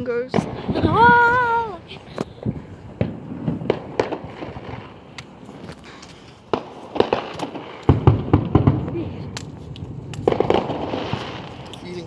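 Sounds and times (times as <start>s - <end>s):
fireworks popping and crackling: 0.0s - 12.0s.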